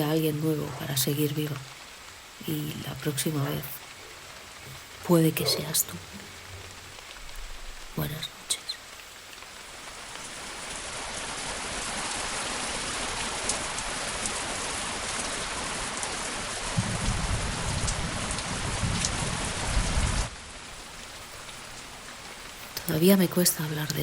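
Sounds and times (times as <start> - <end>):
heavy rain pattering: 0.0 - 24.0
low rumble of thunder: 16.6 - 20.3.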